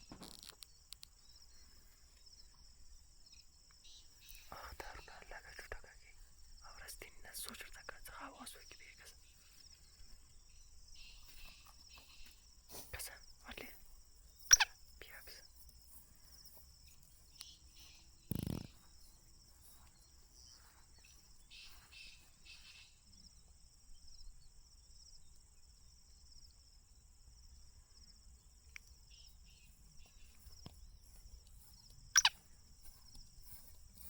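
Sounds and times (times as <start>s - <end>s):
faint chirps: 0.0s - 26.7s, 27.5s - 34.0s
high-pitched insect drone: 29.1s - 34.0s.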